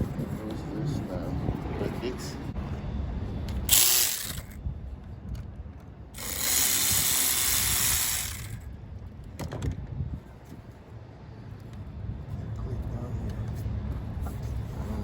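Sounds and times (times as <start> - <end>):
power ratchet spinning bolt: 3.7 - 4.6, 6.2 - 8.6.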